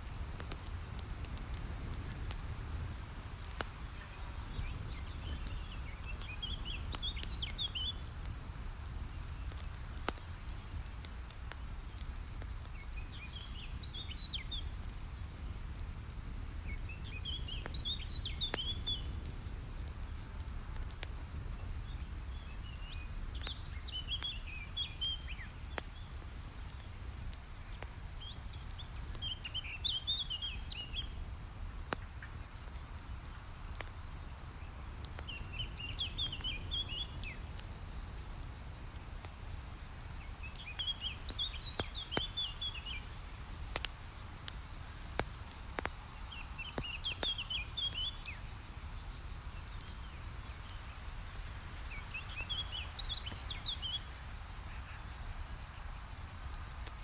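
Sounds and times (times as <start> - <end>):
campfire rumble and crackling: 0.0 - 57.0
songbird chirping: 35.1 - 37.4, 40.2 - 43.1, 46.2 - 48.5, 51.8 - 56.6.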